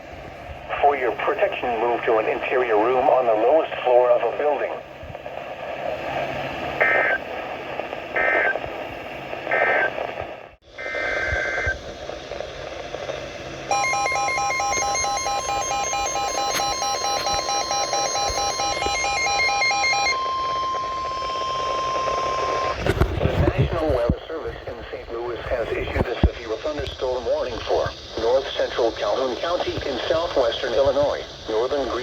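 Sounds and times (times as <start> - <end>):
radio static: 0.7 - 32.0
steady attention tone: 13.5 - 22.9
short data bursts: 13.7 - 23.4.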